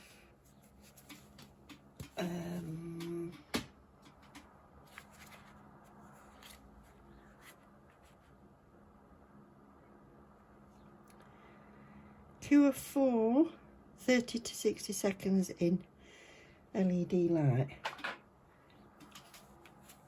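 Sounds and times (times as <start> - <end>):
room fan humming: 0.0 - 20.0
person humming: 2.1 - 3.4.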